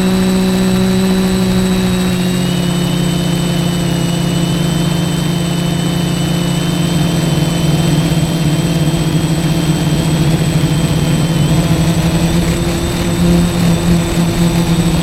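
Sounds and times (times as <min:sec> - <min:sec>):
drone motors droning: 0:00.0 - 0:15.0
wind rumble on microphone: 0:07.3 - 0:15.0.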